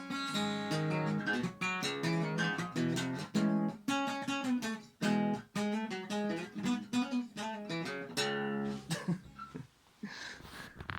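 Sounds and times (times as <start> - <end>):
acoustic guitar strumming chords: 0.0 - 9.6.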